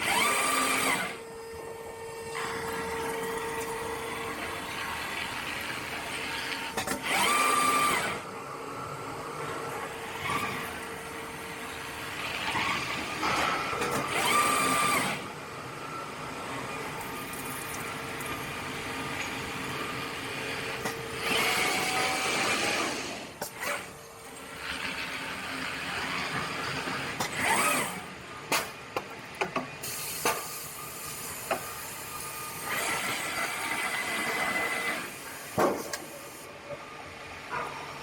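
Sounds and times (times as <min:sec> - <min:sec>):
motor whining up and down: 0:00.0 - 0:16.2, 0:19.5 - 0:28.6, 0:31.4 - 0:36.2.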